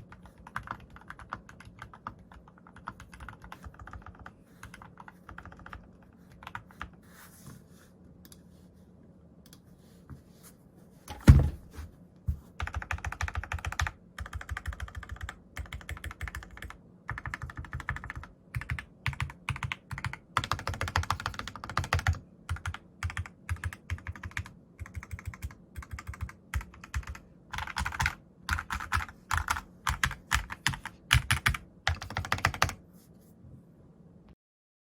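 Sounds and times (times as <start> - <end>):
clacky keyboard typing: 0.0 - 7.0, 12.6 - 32.8
loud thump: 11.1 - 11.8.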